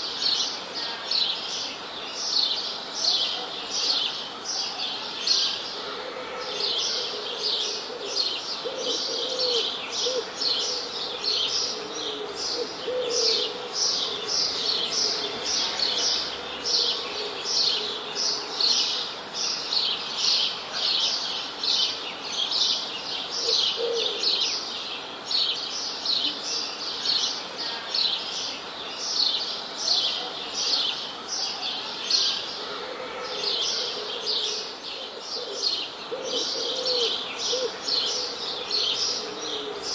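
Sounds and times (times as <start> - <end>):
songbirds chirping rapidly: 33.4 - 39.9.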